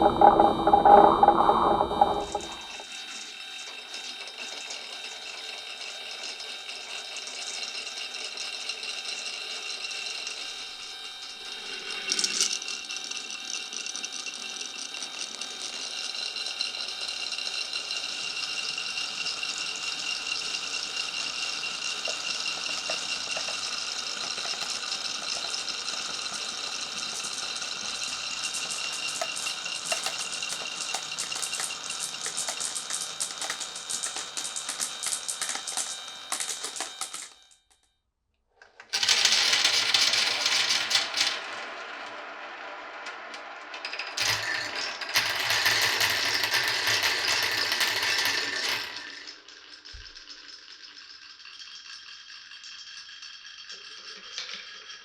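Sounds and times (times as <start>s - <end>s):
glass marbles rolling and rattling: 12.0s - 12.6s, 21.1s - 37.3s, 44.2s - 55.0s.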